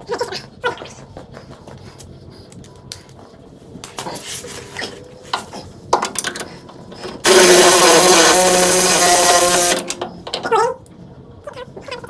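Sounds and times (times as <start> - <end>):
clanks and knocks of shop work: 3.9 - 10.7
power tool running: 7.0 - 10.3.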